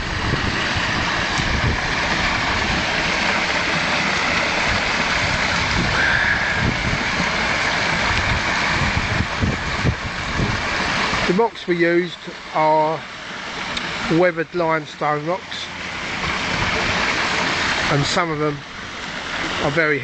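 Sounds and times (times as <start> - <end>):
wind buffeting microphone: 0.0 - 11.3
waterfall splashing on rocks: 0.0 - 20.0.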